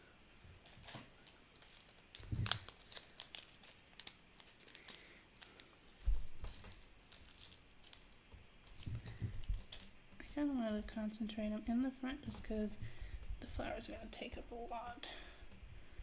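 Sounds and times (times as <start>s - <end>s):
packaging crinkling: 0.6s - 10.5s.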